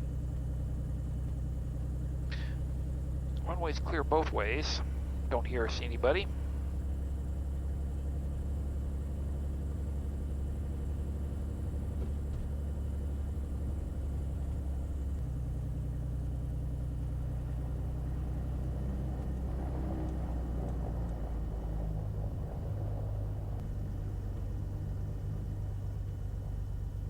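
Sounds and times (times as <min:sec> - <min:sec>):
propeller plane engine droning: 0:00.0 - 0:27.0.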